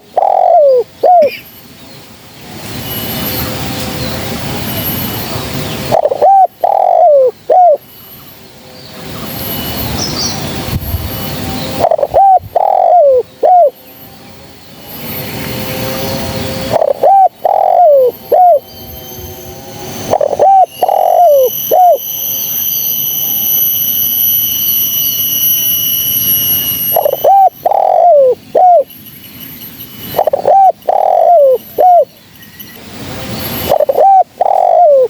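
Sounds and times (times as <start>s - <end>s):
dove cooing: 0.0s - 1.4s, 5.9s - 7.8s, 11.8s - 13.8s, 16.7s - 18.6s, 20.1s - 22.0s, 27.0s - 28.9s, 30.1s - 32.1s, 33.6s - 35.0s
steady high-pitched ringing: 0.0s - 35.0s.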